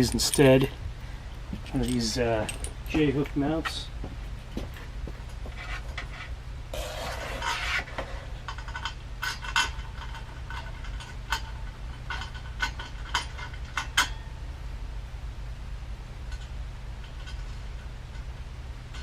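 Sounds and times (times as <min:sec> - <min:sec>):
sharp metallic clinks: 0:00.0 - 0:00.7, 0:01.6 - 0:03.8
steady low hum: 0:00.0 - 0:19.0
metal scraping rustle: 0:05.5 - 0:13.8.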